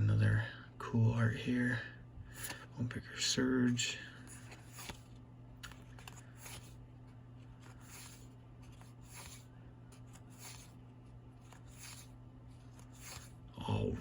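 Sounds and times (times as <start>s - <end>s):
steady low hum: 0.0s - 14.0s
trading cards swishing: 4.3s - 13.5s.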